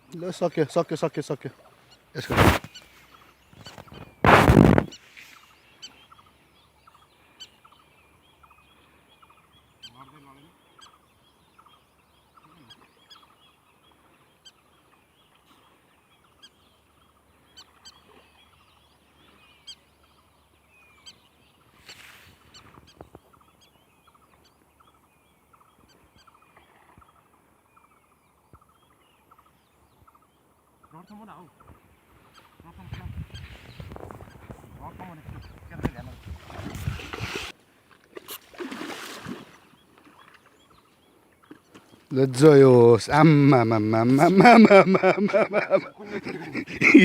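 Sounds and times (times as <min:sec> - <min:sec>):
bird chirps and calls: 0:01.8 - 0:36.7.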